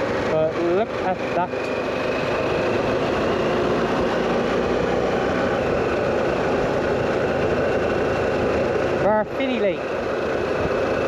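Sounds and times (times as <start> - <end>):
motorcycle engine: 0.0 - 11.0.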